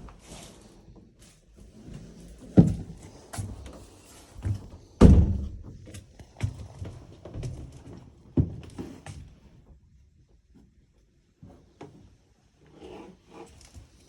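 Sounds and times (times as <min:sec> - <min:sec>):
footsteps on hollow floor: 0:01.9 - 0:09.3
loud thunks: 0:05.0 - 0:05.8.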